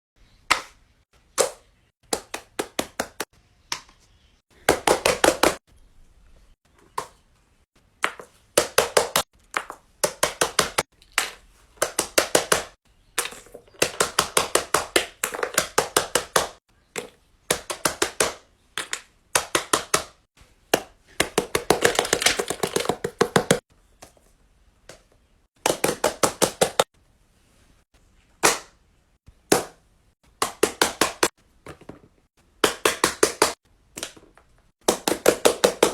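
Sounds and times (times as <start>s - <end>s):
quick taps in rapid runs: 4.7s - 5.6s, 8.0s - 10.9s, 11.8s - 23.6s, 25.6s - 26.9s, 30.4s - 31.4s, 32.6s - 35.9s.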